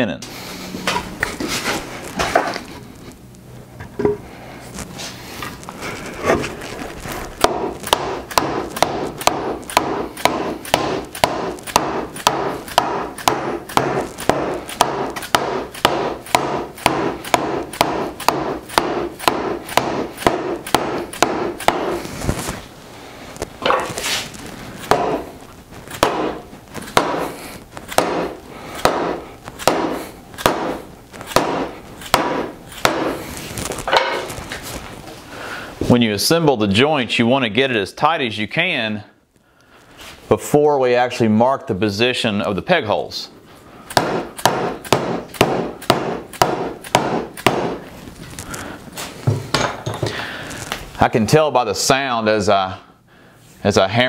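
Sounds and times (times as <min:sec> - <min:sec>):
hammer striking wood: 0:07.4 - 0:22.0, 0:24.8 - 0:25.3, 0:26.0 - 0:33.2, 0:43.9 - 0:47.8.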